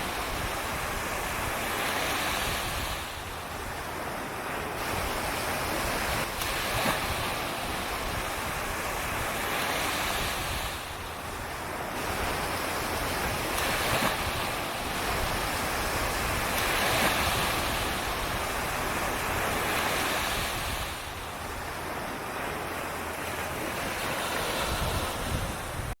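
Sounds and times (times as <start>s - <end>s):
small waves breaking on sand: 0.0s - 26.0s.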